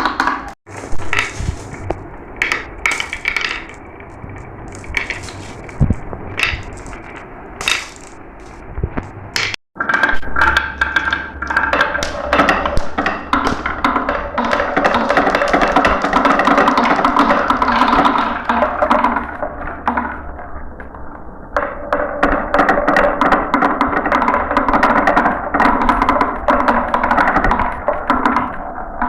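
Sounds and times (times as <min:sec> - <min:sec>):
marbles clacking down track: 0:00.0 - 0:08.6.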